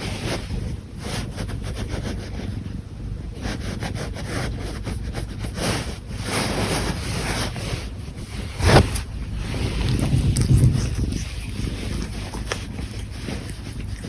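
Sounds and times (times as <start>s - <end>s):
handling noise on microphone: 6.3s - 13.4s
bump: 8.4s - 11.3s.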